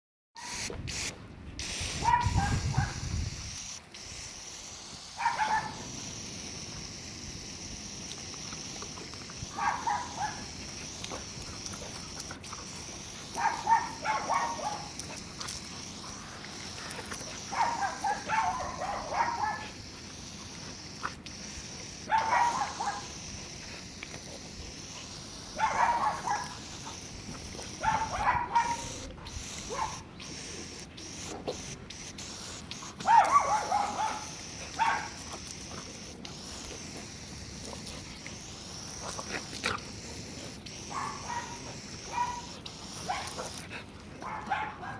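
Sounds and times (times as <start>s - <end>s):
puppy barking and yipping: 2.0s - 3.0s, 5.2s - 5.8s, 9.5s - 10.5s, 13.4s - 14.9s, 17.4s - 19.8s, 22.1s - 23.1s, 25.5s - 27.0s, 27.8s - 29.0s, 29.6s - 30.1s, 33.0s - 35.2s, 40.9s - 43.5s, 44.2s - 44.9s
steady high hiss: 3.1s - 43.6s.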